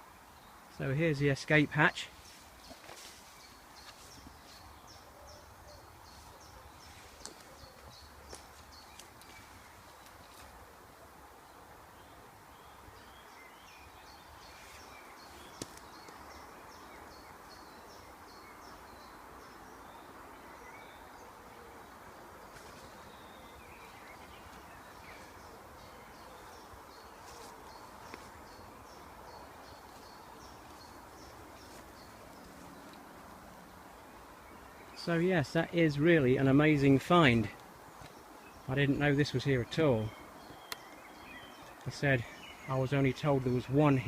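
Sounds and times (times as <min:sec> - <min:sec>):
small birds chirping: 0:00.0 - 0:44.0
steady background hiss: 0:00.0 - 0:44.0
faint sharp clicks: 0:40.5 - 0:41.0.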